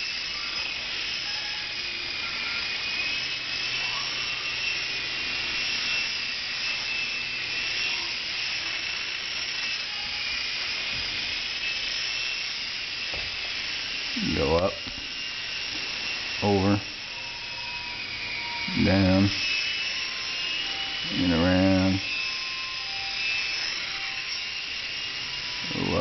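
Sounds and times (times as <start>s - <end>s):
rc helicopter whine: 0.0s - 26.0s.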